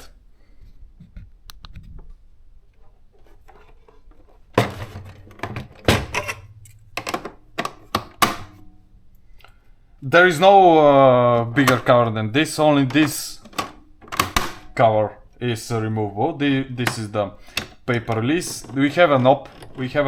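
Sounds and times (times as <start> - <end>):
faint plastic rustling: 0.0 - 6.9
sharp clicks and knocks: 4.6 - 8.7, 12.8 - 14.8.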